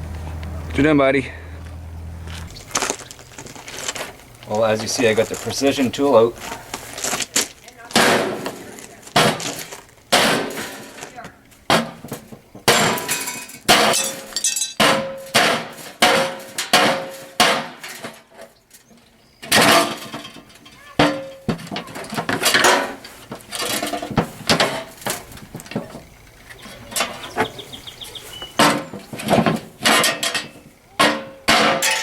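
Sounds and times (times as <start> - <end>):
light metal clattering: 1.6 - 32.0
heavy tool striking metal barbecue: 3.9 - 32.0.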